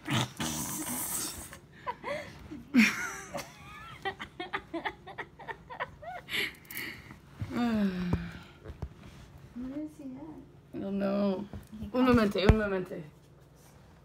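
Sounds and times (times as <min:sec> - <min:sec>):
person laughing and giggling: 0:01.7 - 0:06.7
breaths: 0:06.3 - 0:08.7.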